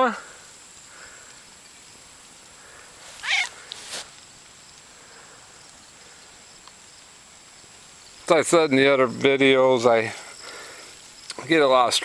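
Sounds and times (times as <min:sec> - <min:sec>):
cat meowing: 0:03.2 - 0:03.6.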